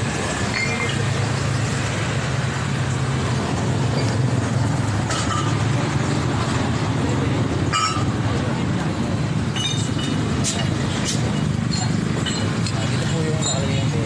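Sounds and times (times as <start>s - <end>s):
metallic clink: 9.5s - 12.8s.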